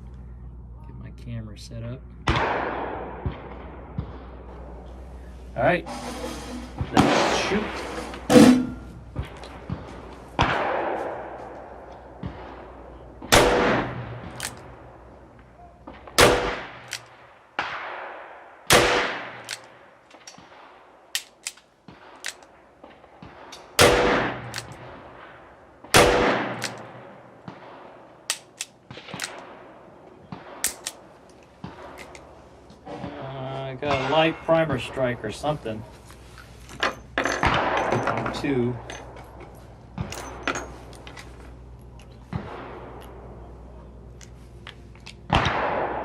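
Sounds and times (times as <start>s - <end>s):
faint sharp cracks: 19.1s - 33.2s
revolver shots echoing: 23.7s - 25.2s.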